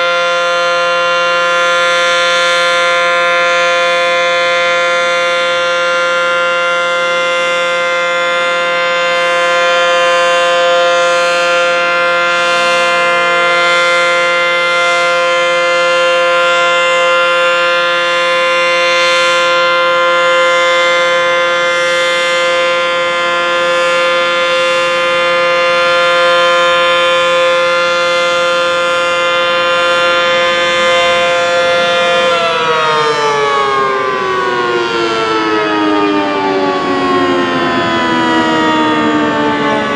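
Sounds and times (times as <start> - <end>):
two-tone warning siren: 0.0 - 39.9.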